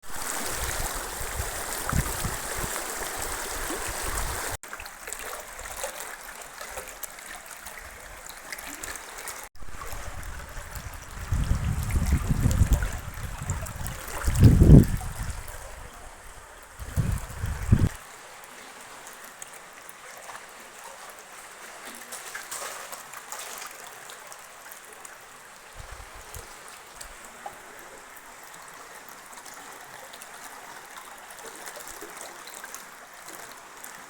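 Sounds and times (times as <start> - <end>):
stream water flowing: 0.0 - 34.0.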